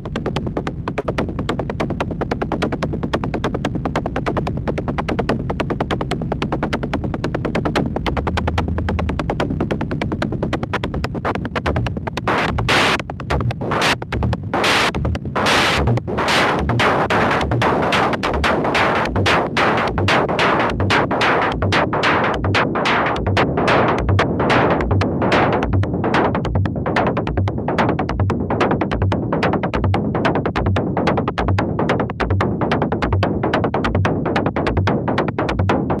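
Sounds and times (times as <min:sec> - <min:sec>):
steady kick drum: 0:00.0 - 0:36.0
techno music with synthesizer: 0:00.0 - 0:36.0
fast high percussion: 0:05.8 - 0:32.2.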